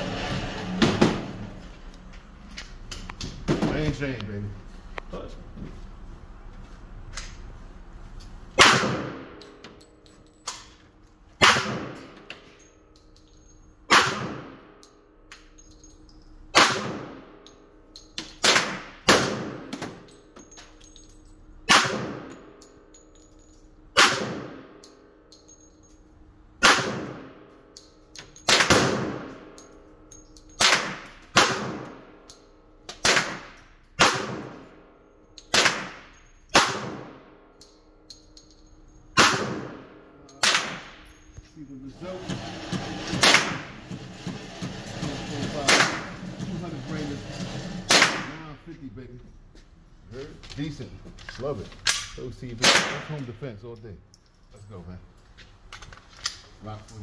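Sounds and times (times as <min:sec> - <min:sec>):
pistol shots echoing: 0:35.5 - 0:37.2.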